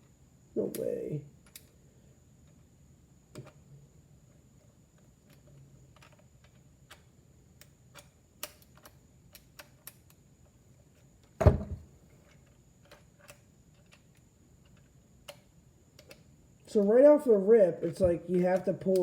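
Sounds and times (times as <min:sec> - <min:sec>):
loud thud: 0:11.4 - 0:11.8.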